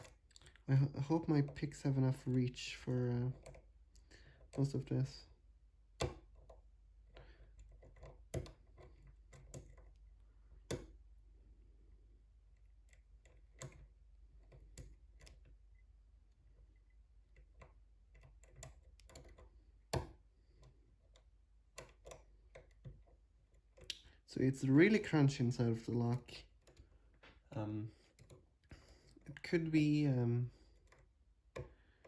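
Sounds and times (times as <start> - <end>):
lock pick clicking and scraping: 0.0 - 0.6, 3.3 - 4.7, 6.0 - 11.0, 12.6 - 15.8, 16.4 - 24.1, 30.7 - 32.0.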